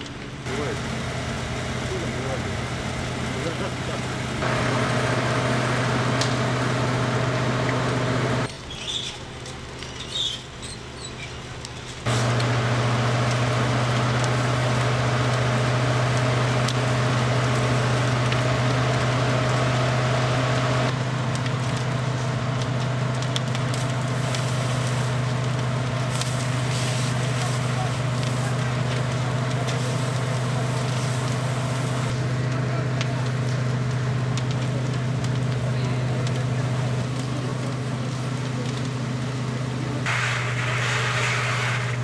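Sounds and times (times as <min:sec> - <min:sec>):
vehicle engine humming: 0:00.0 - 0:08.6, 0:11.7 - 0:42.0
fire crackling and popping: 0:00.0 - 0:42.0
loud hiss: 0:40.1 - 0:42.0.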